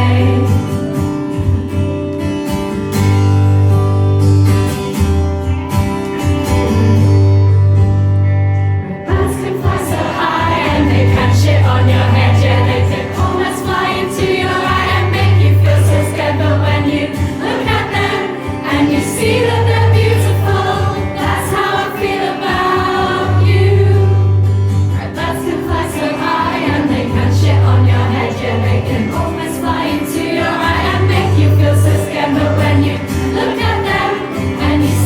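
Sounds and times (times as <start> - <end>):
crowd singing along: 0.0 - 1.7, 9.0 - 35.0
live pop band: 8.9 - 35.0.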